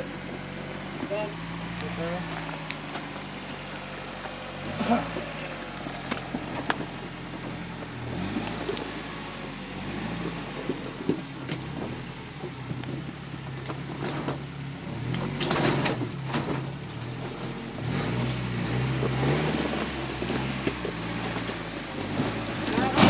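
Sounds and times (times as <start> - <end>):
off-road vehicle engine revving: 0.0 - 23.0.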